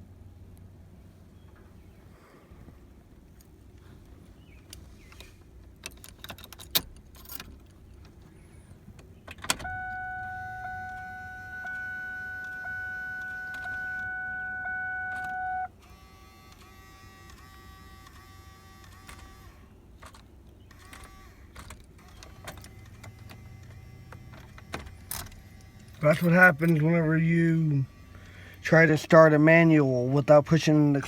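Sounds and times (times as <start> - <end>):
dashboard warning tone: 9.6 - 15.8, 22.6 - 31.0.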